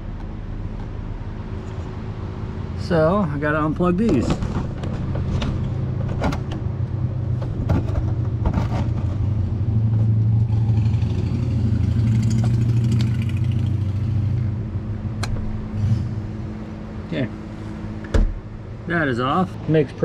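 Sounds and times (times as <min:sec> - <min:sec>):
low mechanical drone: 0:00.0 - 0:20.0.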